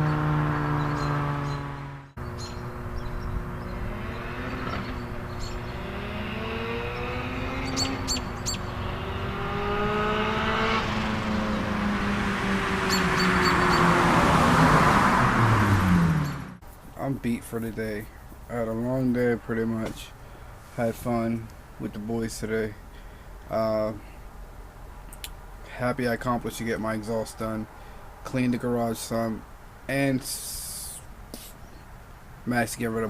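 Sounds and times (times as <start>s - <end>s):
car engine accelerating: 0.0s - 16.6s.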